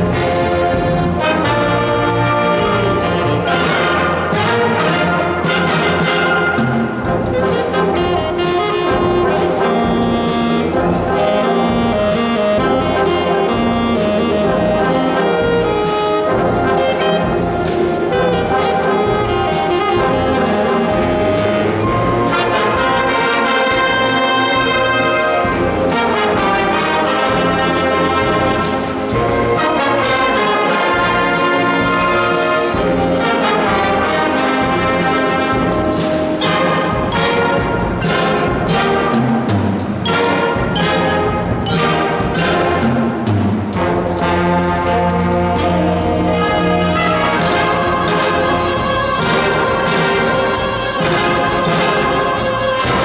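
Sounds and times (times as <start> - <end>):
brass band playing: 0.0 - 53.0.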